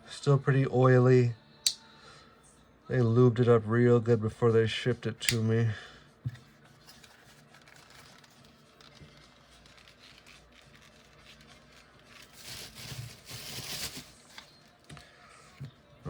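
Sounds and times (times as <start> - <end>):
rustling and scraping: 6.3 - 15.2.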